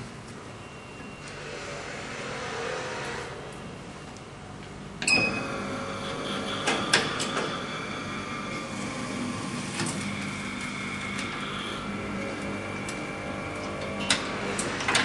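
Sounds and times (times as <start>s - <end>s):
motor running with high whine: 5.1s - 15.0s.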